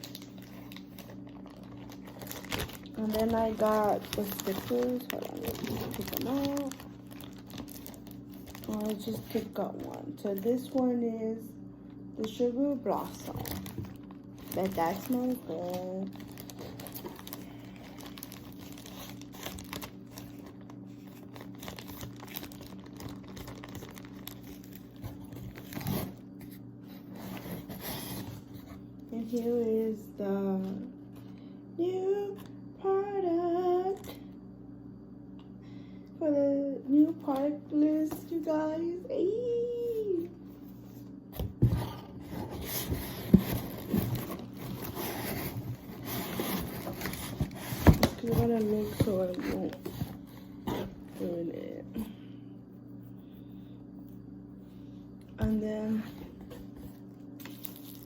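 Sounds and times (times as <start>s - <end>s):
packaging crinkling and rustling: 0.0s - 11.0s, 12.2s - 28.8s, 40.8s - 51.4s, 56.0s - 58.0s
steady low hum: 0.0s - 58.0s.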